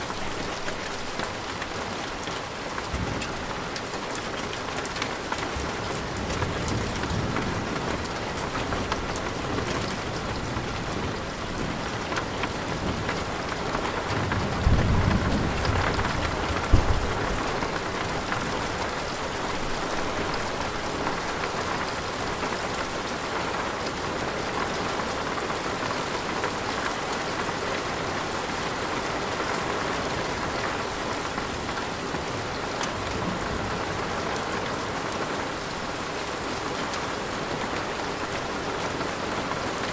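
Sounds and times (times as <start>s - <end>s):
steady rain: 0.0s - 39.9s
thunder rumbling: 14.0s - 18.9s
sharp thunderclap: 14.3s - 17.4s.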